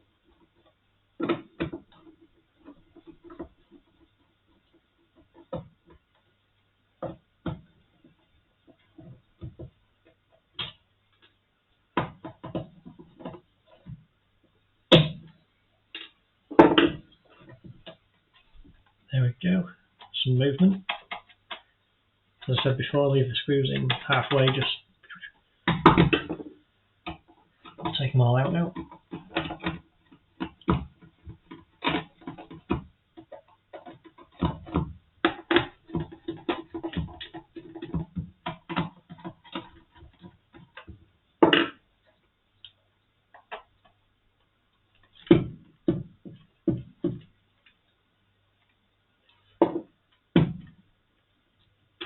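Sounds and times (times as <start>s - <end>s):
tool clicking and knocking on casing: 20.7s - 21.7s, 28.7s - 41.8s.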